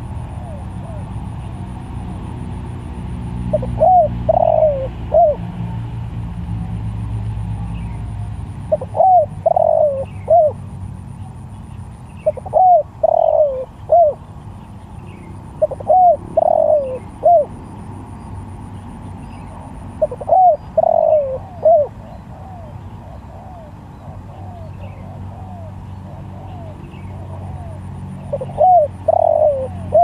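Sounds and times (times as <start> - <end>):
dove cooing: 0.0 - 1.8, 3.2 - 5.6, 8.6 - 10.6, 12.2 - 14.2, 15.6 - 17.6, 19.4 - 30.0.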